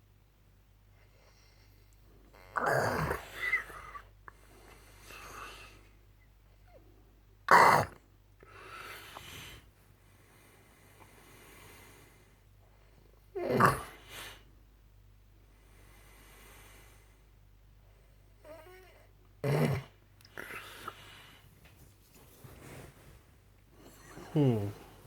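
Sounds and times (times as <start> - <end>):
man snoring: 2.4 - 3.4, 24.2 - 24.9
soft breath out: 8.4 - 12.5.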